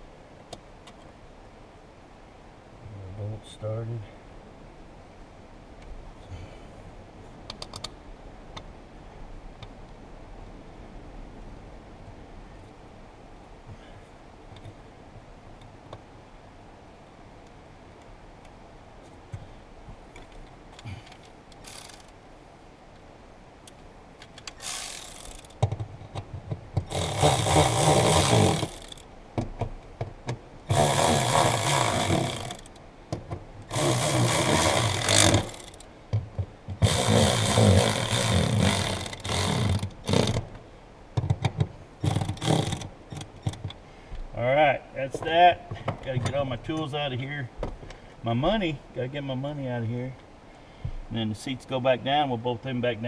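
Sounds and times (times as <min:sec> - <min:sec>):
power tool driving bolts: 0:24.2 - 0:25.9, 0:26.5 - 0:29.1, 0:30.7 - 0:35.9, 0:36.7 - 0:40.5, 0:41.2 - 0:43.7.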